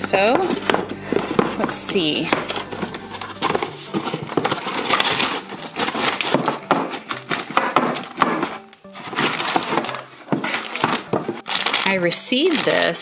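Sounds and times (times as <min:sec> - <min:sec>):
cardboard box scraping and clicking: 0:00.3 - 0:11.8.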